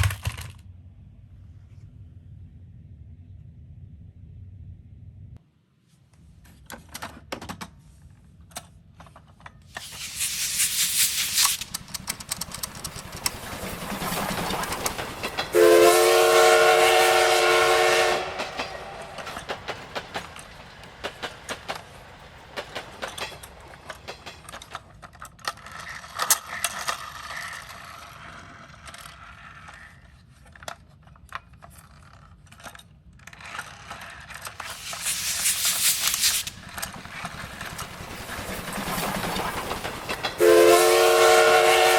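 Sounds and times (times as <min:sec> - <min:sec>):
plastic clicks and rattles: 0:00.0 - 0:00.6, 0:11.4 - 0:13.7
toy steam hissing: 0:09.7 - 0:24.6, 0:34.4 - 0:41.8
toy steam train whistle: 0:09.8 - 0:19.8, 0:40.3 - 0:41.9.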